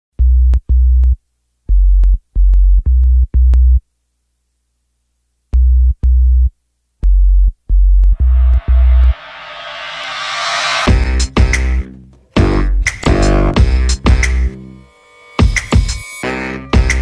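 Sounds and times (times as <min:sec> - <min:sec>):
deep synth bass notes: 0:07.8 - 0:09.2.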